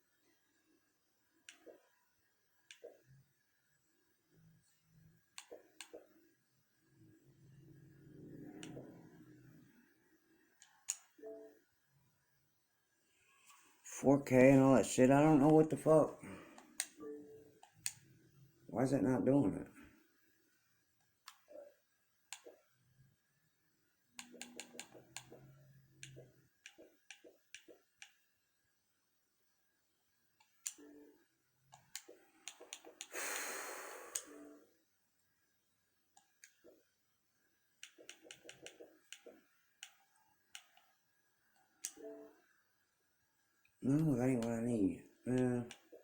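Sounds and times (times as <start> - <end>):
mouse and keyboard clicks: 8.4 - 9.0, 10.6 - 11.1, 21.2 - 21.6, 24.2 - 28.2, 31.7 - 33.1, 37.8 - 41.0, 41.6 - 42.2, 45.4 - 46.0.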